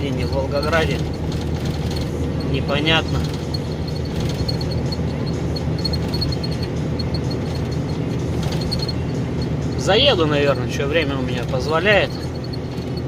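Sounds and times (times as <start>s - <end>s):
road noise: 0.0s - 13.0s
truck engine drone: 0.0s - 13.0s
faint high-pitched ticking: 2.0s - 10.6s.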